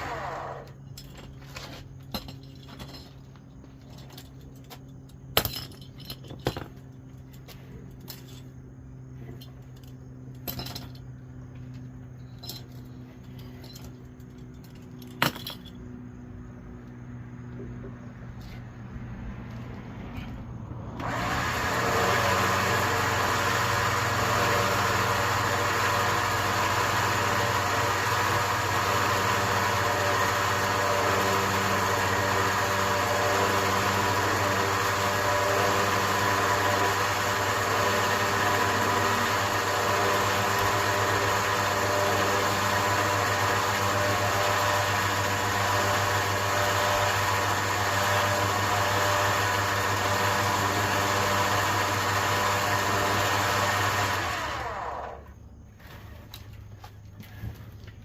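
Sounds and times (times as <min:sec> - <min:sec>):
electric winch motor whining: 0:00.0 - 0:00.9, 0:20.9 - 0:56.1.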